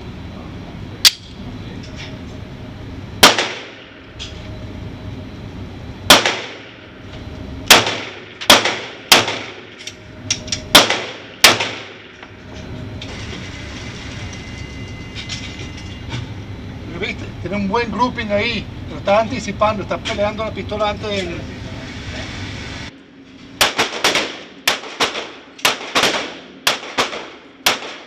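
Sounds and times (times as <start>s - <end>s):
pistol shots: 3.2s - 3.8s, 6.1s - 6.7s, 7.7s - 9.8s, 10.7s - 12.2s, 23.6s - 28.0s.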